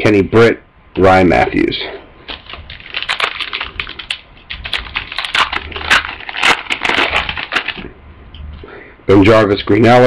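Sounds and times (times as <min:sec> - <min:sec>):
card pack wrapper crinkling: 0:02.2 - 0:07.9.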